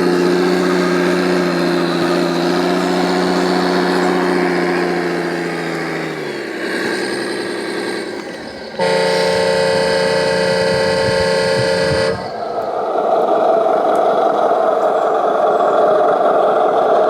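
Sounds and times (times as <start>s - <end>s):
toy truck engine winding down: 0.0s - 17.0s
truck air horn blast: 8.8s - 12.5s.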